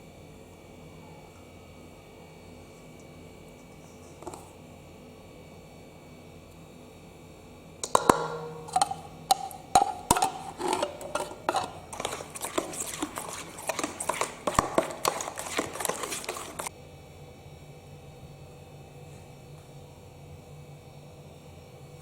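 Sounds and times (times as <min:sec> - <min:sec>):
utensils knocking on cookware: 0:07.8 - 0:16.7.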